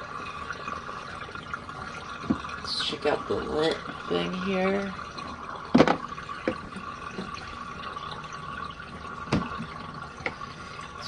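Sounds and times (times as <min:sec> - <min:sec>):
washing machine drain pump: 0:00.0 - 0:11.0
plastic knocks and clicks: 0:05.7 - 0:07.3, 0:09.3 - 0:10.4.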